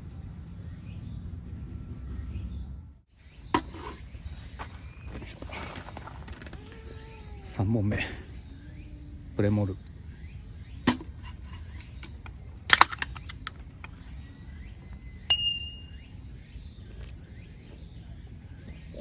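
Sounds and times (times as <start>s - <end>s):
birds chirping faintly: 0.5s - 19.0s
metallic clink: 15.3s - 16.0s.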